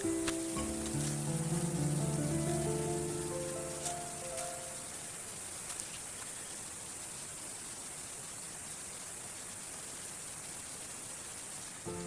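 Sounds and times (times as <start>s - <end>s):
waterfall rushing: 0.0s - 5.3s.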